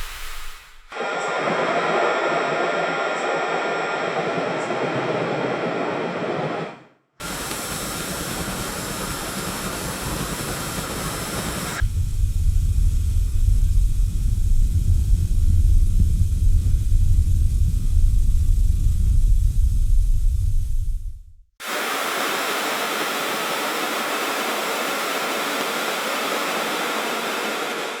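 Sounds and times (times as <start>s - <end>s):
steady white noise hiss: 0.0s - 4.0s, 21.6s - 28.0s
loud deep rumble: 11.8s - 21.5s.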